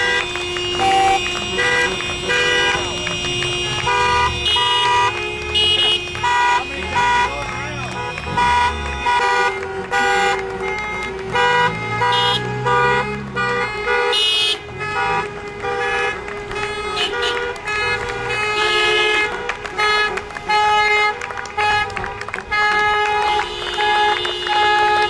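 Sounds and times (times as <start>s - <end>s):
car horns honking: 0.0s - 25.0s.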